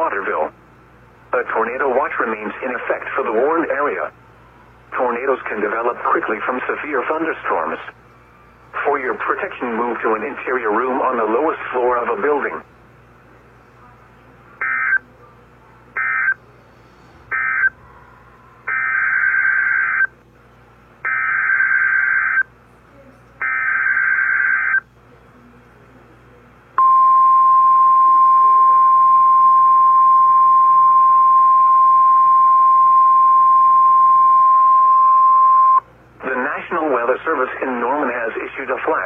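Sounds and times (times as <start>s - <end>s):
steady single-pitch alarm tone: 17.3s - 20.1s, 21.0s - 22.5s, 23.4s - 24.8s, 26.8s - 35.8s.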